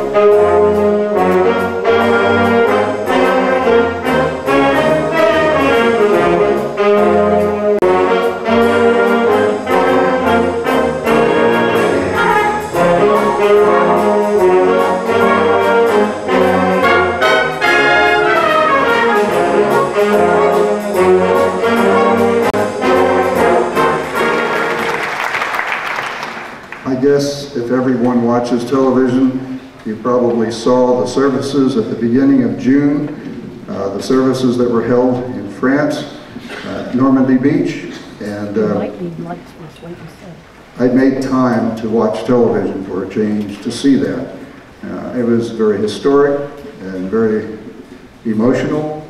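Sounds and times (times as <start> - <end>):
concert band playing: 0.0 - 27.0.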